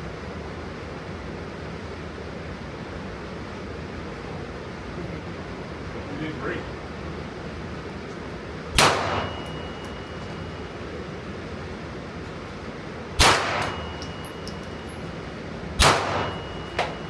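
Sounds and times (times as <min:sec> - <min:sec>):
gunshots with echo: 0:08.8 - 0:09.6, 0:13.2 - 0:14.3, 0:15.8 - 0:17.0
faint high ringing tone: 0:09.1 - 0:11.8, 0:13.6 - 0:17.0.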